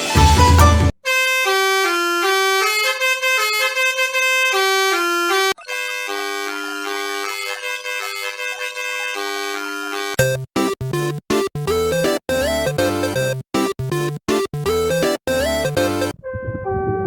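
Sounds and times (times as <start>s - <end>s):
musical bus horn melody: 0.0s - 10.2s, 14.8s - 17.0s.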